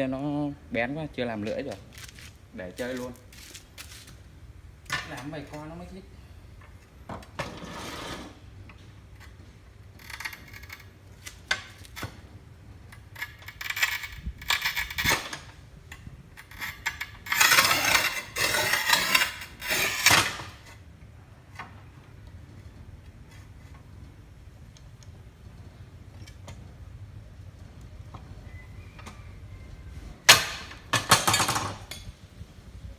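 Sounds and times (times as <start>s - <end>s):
tile cutter scraping: 7.4s - 8.4s, 16.4s - 20.7s.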